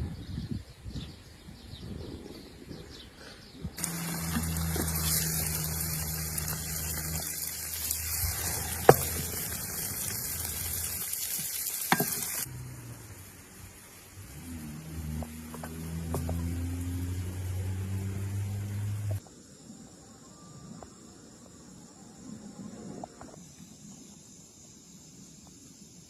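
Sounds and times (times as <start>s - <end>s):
food sizzling in hot oil: 3.8s - 19.0s.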